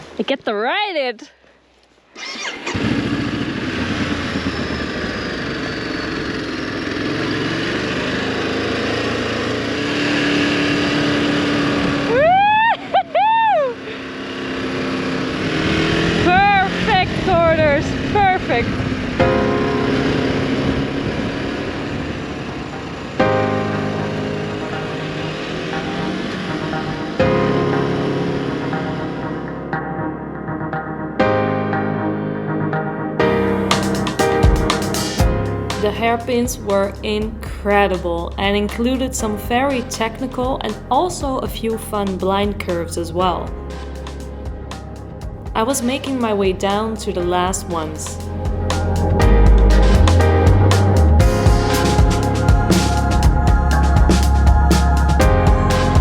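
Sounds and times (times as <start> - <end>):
road and wind noise: 2.2 - 30.6, 33.3 - 56.0
motorcycle engine running: 2.3 - 31.0, 33.2 - 56.0
sustained background music chords: 14.0 - 56.0.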